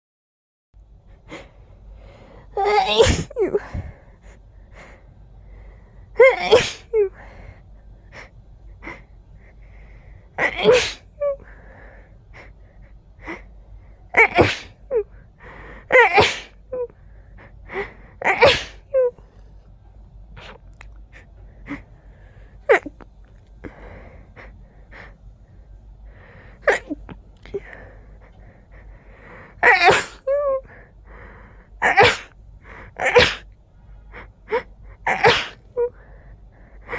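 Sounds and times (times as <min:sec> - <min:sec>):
person sneezing: 0:02.6 - 0:04.0, 0:06.2 - 0:07.2, 0:10.4 - 0:11.5, 0:14.2 - 0:15.1, 0:15.9 - 0:16.6, 0:18.2 - 0:19.2, 0:22.7 - 0:23.0, 0:26.6 - 0:27.8, 0:29.6 - 0:30.8, 0:31.8 - 0:32.4, 0:33.0 - 0:33.5, 0:35.0 - 0:36.0.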